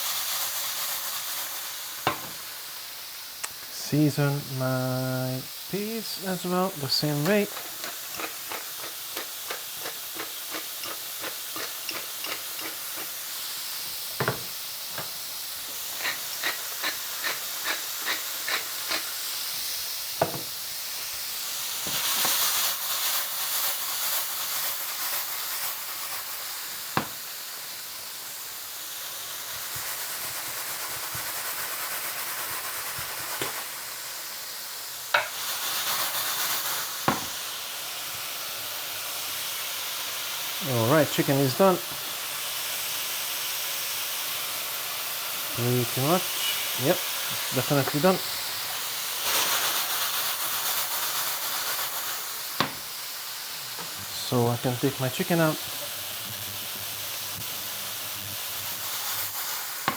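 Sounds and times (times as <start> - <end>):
food sizzling in pans: 0.0 - 59.9
utensil knocking against pan: 2.1 - 2.4, 7.2 - 13.2, 14.2 - 15.1, 20.2 - 20.5, 35.2 - 35.4, 37.1 - 37.4, 52.6 - 52.8.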